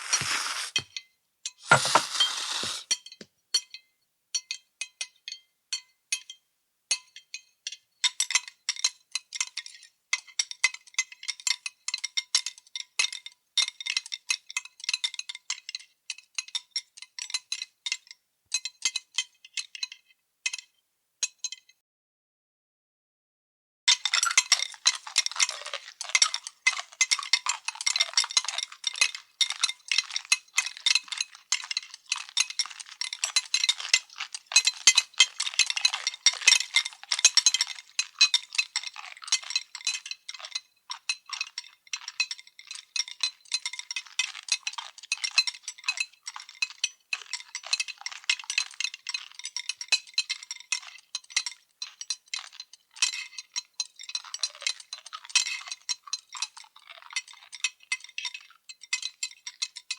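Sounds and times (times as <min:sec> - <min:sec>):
dishes and cutlery clinking: 0:01.6 - 0:02.9.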